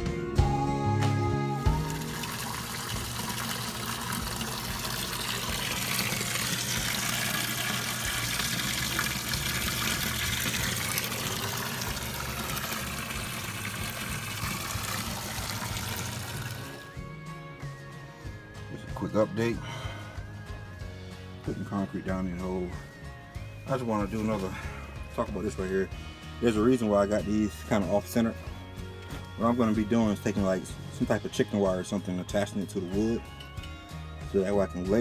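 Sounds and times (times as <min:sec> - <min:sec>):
water running and pouring: 0:01.7 - 0:17.0, 0:23.7 - 0:25.8.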